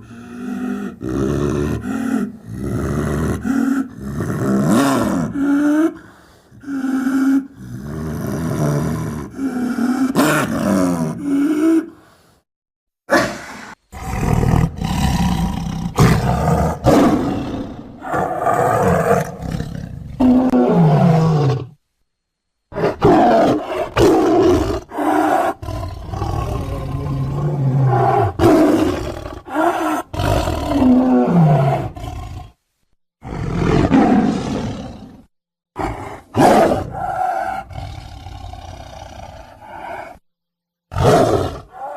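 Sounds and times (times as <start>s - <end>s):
big cat roars and growls: 0.0s - 12.0s, 13.1s - 21.8s, 22.7s - 32.6s, 33.2s - 40.2s, 40.9s - 41.9s.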